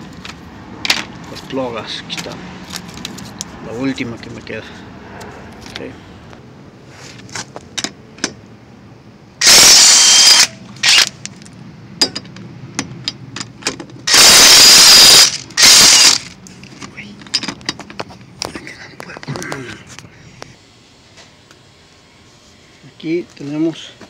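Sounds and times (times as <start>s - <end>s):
impact wrench bursts: 9.4s - 11.2s, 14.1s - 16.4s.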